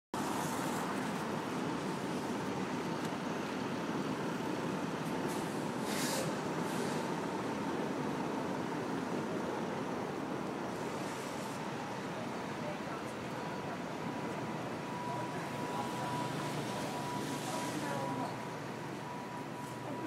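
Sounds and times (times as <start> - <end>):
passing vehicle noise: 0.2 - 20.0
short high hiss: 5.3 - 7.1.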